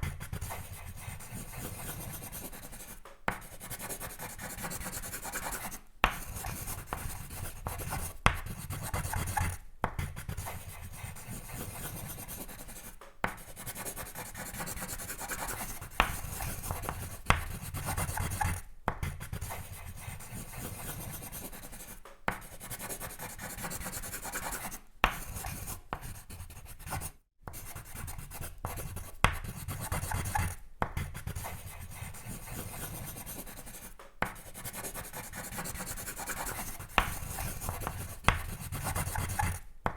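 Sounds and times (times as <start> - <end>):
pencil scratching on paper: 0.0 - 39.7.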